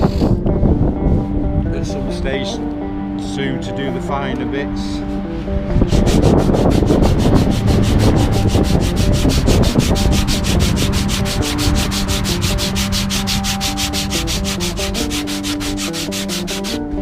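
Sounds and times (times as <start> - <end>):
sandpaper rubbing on wood: 5.8 - 17.0.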